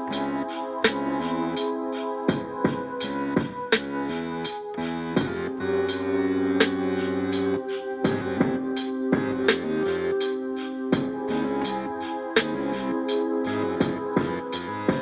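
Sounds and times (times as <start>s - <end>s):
held organ chords: 0.0s - 15.0s
drum strikes: 8.0s - 9.8s.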